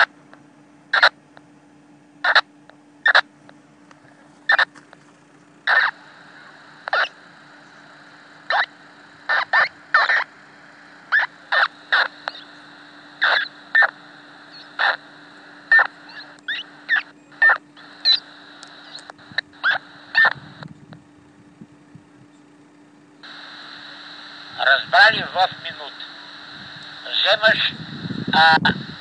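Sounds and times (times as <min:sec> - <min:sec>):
radio scanner chirping bursts: 0:00.9 - 0:01.2, 0:02.2 - 0:03.3, 0:04.5 - 0:04.7, 0:05.6 - 0:20.7, 0:23.2 - 0:29.0
faint hiss: 0:05.7 - 0:20.6, 0:23.2 - 0:29.0.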